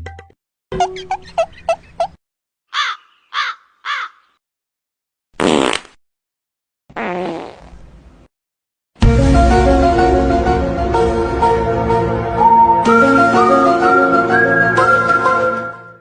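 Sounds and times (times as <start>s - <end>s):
music: 0.0s - 1.0s, 9.0s - 16.0s
crow caws: 2.7s - 4.4s
fart sounds: 5.4s - 6.0s, 6.9s - 7.9s.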